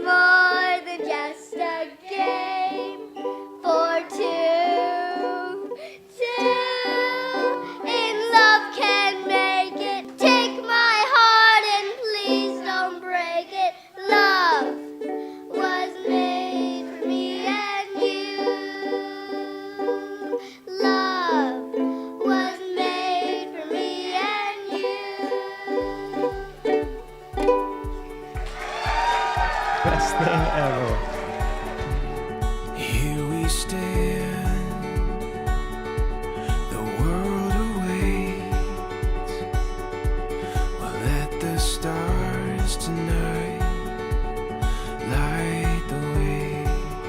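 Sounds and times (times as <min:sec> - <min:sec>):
person singing: 0:00.0 - 0:28.1, 0:29.1 - 0:35.5, 0:36.4 - 0:39.6, 0:40.2 - 0:47.0
strummed ukulele: 0:00.0 - 0:47.0
low bass beat: 0:26.3 - 0:47.0.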